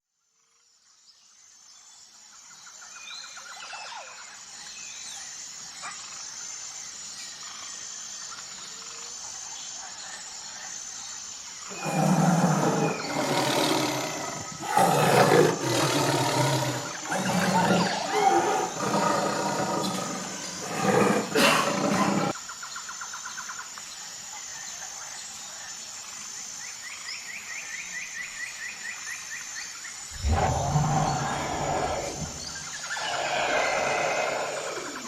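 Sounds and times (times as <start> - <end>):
loud low animal roars: 11.7 - 22.3, 30.2 - 35.0.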